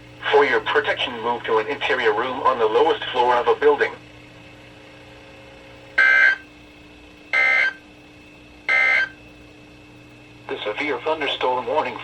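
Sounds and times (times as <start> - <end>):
radio hum and hiss: 0.0 - 12.0.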